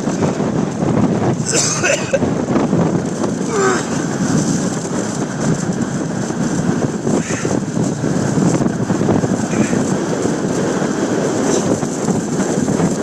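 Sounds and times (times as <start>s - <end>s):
wind hitting microphone: 0.0s - 13.0s.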